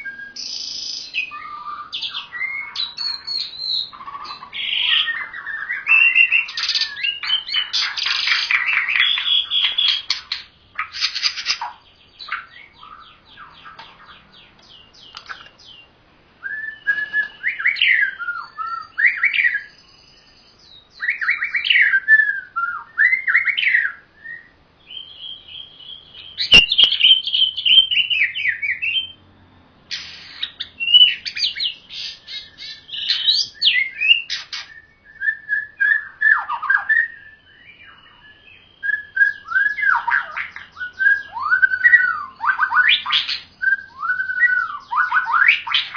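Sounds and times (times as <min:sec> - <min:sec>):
birds whistling and chattering: 0:00.0 - 0:45.9
sharp click: 0:14.6 - 0:15.6, 0:26.5 - 0:27.0.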